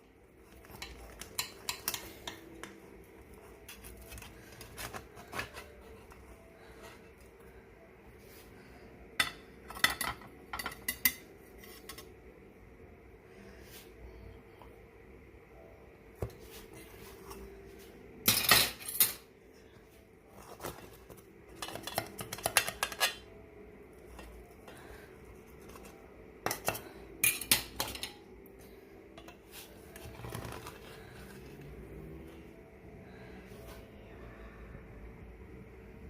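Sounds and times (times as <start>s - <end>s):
cutlery clinking against dishes: 9.2s - 12.1s, 21.6s - 23.2s, 26.5s - 28.2s.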